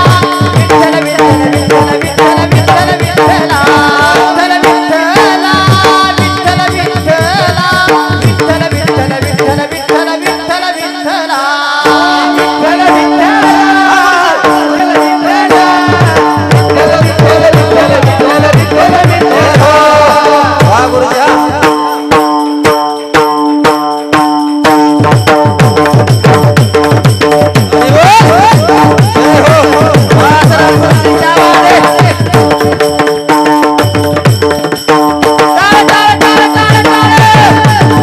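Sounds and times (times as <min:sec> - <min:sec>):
person singing: 0:00.0 - 0:22.2, 0:27.7 - 0:33.1, 0:35.5 - 0:38.0.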